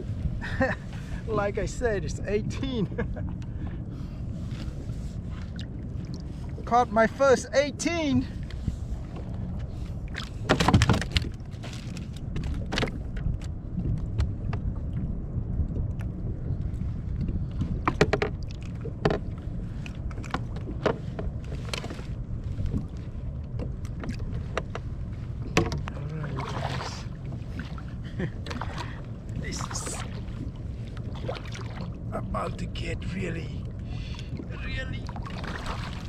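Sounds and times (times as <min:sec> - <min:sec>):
steady low rumble: 0:00.0 - 0:36.0
gear clicking and knocking in boat: 0:08.4 - 0:14.8, 0:17.2 - 0:31.9.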